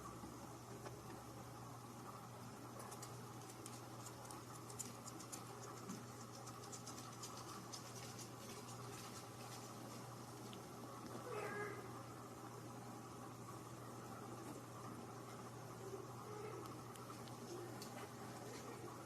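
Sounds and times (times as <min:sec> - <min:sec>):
steady low hum: 0:00.0 - 0:19.0
faint scratching and clicking: 0:02.7 - 0:11.8, 0:16.0 - 0:19.0.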